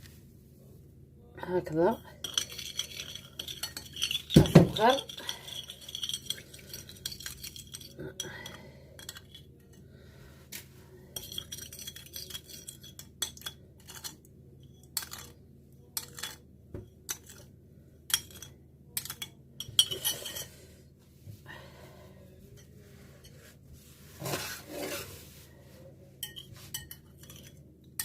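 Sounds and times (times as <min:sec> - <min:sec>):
metal spoon clinking on glass: 0:02.2 - 0:09.4, 0:18.1 - 0:20.5, 0:26.2 - 0:27.6.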